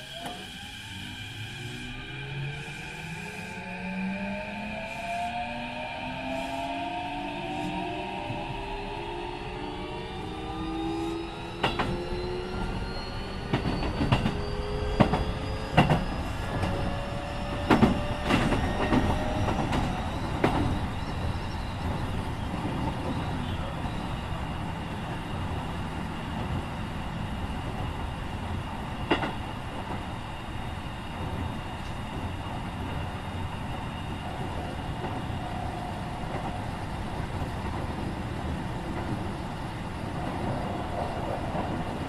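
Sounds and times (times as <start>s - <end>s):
train motor whine: 0.0s - 28.0s.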